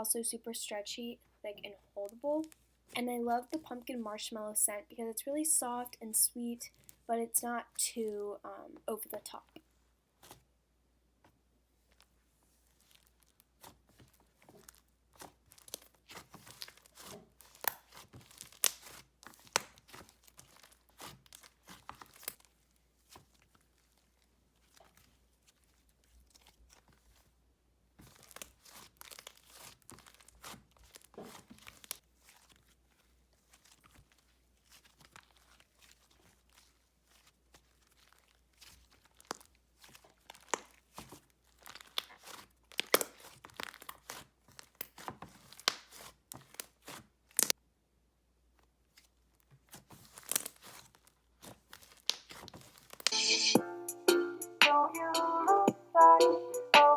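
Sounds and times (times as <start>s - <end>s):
hands squishing sticky slime: 12.7s - 27.2s, 28.0s - 47.6s, 48.8s - 53.1s.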